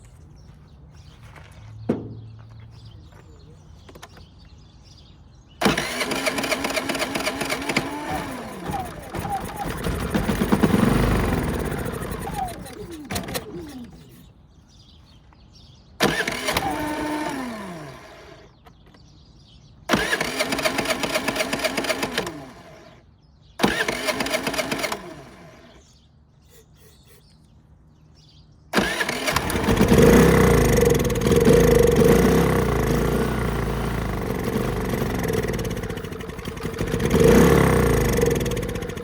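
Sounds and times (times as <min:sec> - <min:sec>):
small generator engine running: 0:05.6 - 0:14.4, 0:16.0 - 0:18.8, 0:19.9 - 0:26.1, 0:28.7 - 0:39.0.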